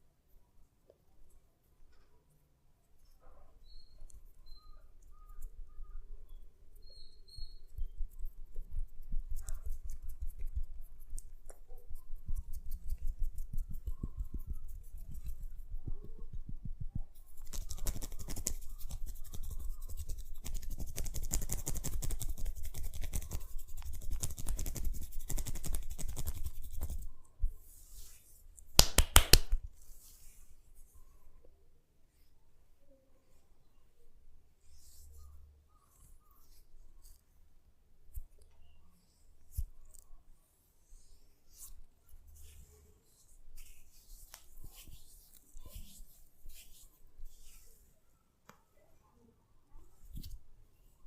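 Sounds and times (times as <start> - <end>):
hands rubbing head and hair: 7.4 - 31.3, 39.4 - 40.2, 41.0 - 48.6, 49.8 - 50.5.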